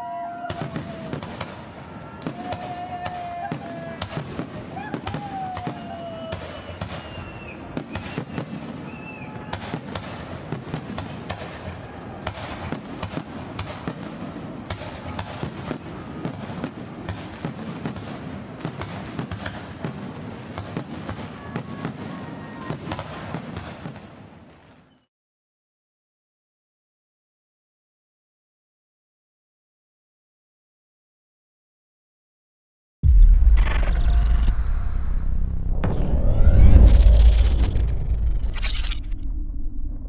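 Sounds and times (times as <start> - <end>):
whistling fireworks glides: 0.0 - 14.2, 33.0 - 40.0
fireworks bangs and crackles: 0.0 - 25.0, 33.0 - 40.0.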